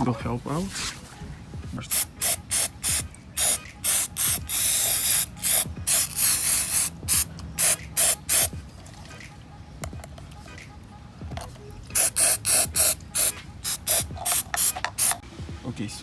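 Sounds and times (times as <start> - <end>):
aerosol spray hissing bursts: 1.9 - 8.5, 12.0 - 15.2.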